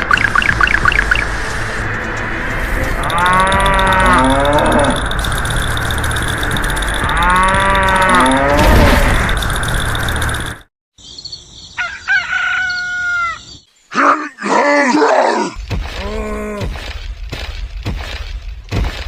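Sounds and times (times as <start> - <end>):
rooster crowing: 11.8 - 13.5
rising and falling animal calls: 11.8 - 15.6.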